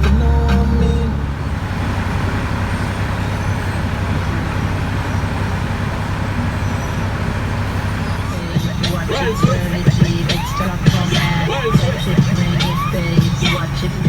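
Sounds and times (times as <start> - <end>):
truck engine hum: 0.0 - 14.0
music: 8.6 - 14.0.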